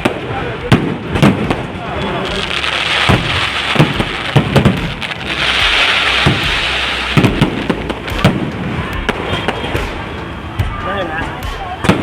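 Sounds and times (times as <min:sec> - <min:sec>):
firecrackers cracking and banging: 0:00.0 - 0:12.0
crackling hiss: 0:01.2 - 0:08.6.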